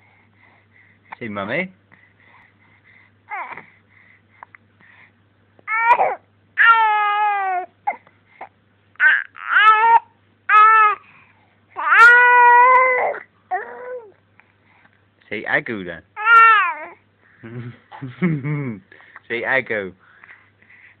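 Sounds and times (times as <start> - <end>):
baby crying: 3.3 - 3.6, 5.7 - 8.1, 9.0 - 11.0, 11.8 - 14.2, 16.2 - 17.0.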